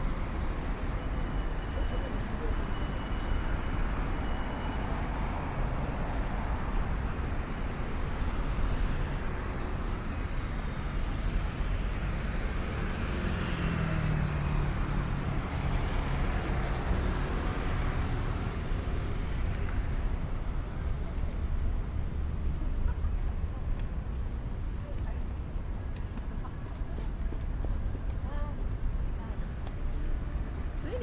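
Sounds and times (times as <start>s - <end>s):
passing cars road noise: 0.0s - 31.0s
vehicle engine hum: 0.0s - 31.0s.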